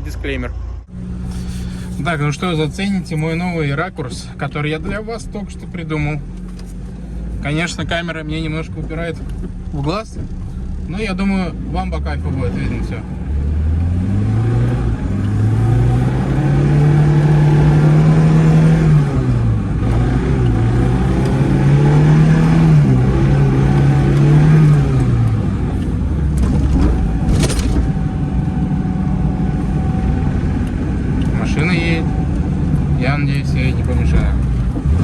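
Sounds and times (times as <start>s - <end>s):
short sharp hiss: 1.2s - 2.0s
car engine revving hard: 10.9s - 35.0s.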